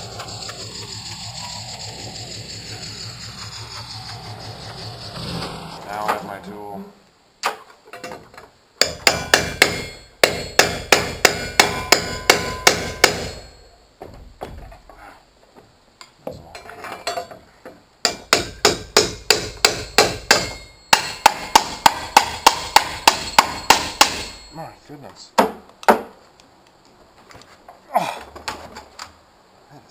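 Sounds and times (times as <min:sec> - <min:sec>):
hammer driving nails: 0:08.8 - 0:14.6, 0:18.0 - 0:24.4.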